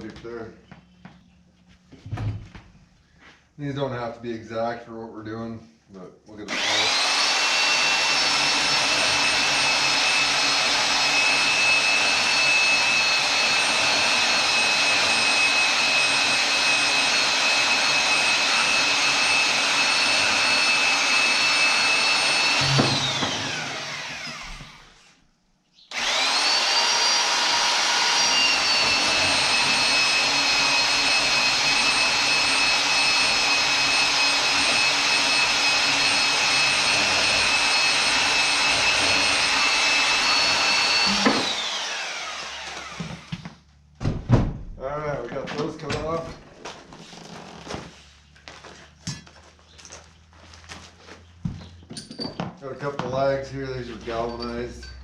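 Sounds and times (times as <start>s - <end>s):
electric cutting tool whine: 6.5s - 25.1s, 25.9s - 43.5s.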